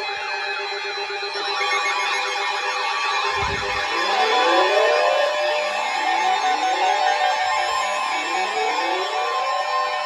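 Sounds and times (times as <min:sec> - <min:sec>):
wailing electronic sirens: 0:03.0 - 0:10.0
steady tone: 0:03.3 - 0:07.0.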